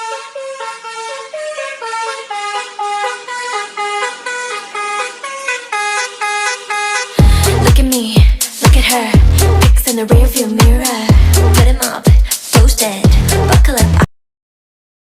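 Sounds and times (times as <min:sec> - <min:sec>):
musical vehicle horn tune: 0:00.0 - 0:07.7
dance music with heavy beat: 0:02.0 - 0:14.1.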